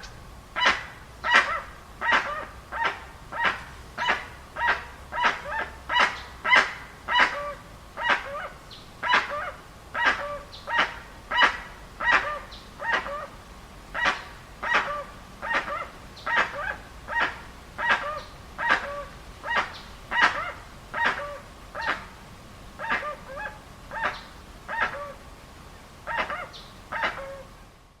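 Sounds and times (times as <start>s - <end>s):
bird harsh calls: 14.0s - 22.1s, 22.8s - 25.2s, 26.1s - 27.5s.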